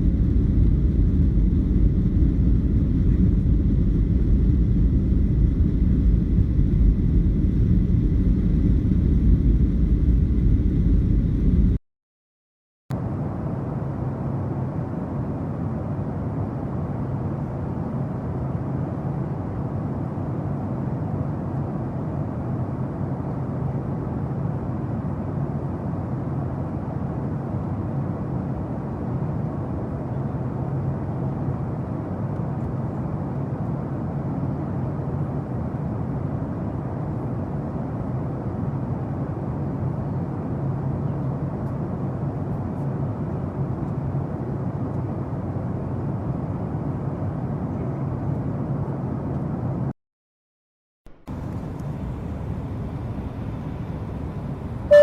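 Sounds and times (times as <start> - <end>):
jet aircraft rumble: 0.0 - 11.8, 12.9 - 49.9, 51.1 - 55.0.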